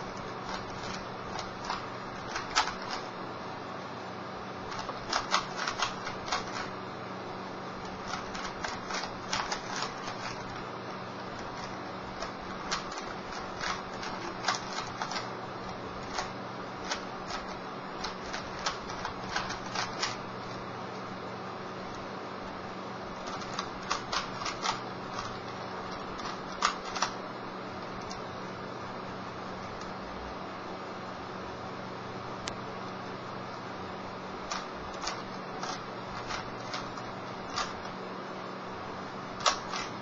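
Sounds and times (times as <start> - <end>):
faint low hum: 0.0 - 40.0
puzzle cube clicking as twisted: 0.4 - 3.0, 4.7 - 6.7, 7.8 - 10.6, 11.4 - 15.3, 16.0 - 20.2, 23.2 - 27.2, 34.5 - 37.9, 39.4 - 40.0.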